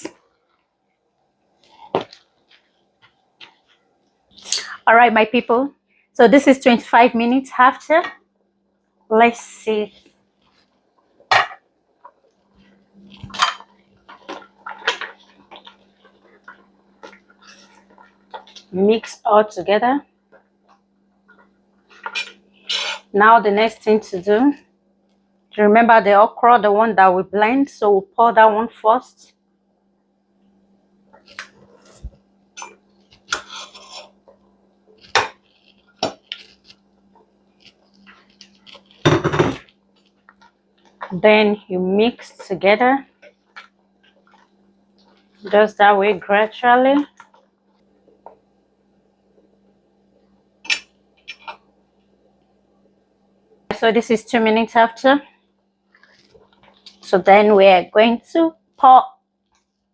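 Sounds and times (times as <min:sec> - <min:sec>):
utensils clinking and scraping pot: 0:31.4 - 0:34.2.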